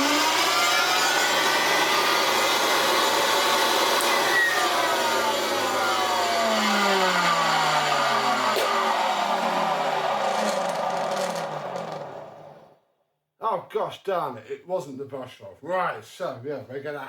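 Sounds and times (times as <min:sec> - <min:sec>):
vacuum cleaner motor whining: 0:00.0 - 0:12.7.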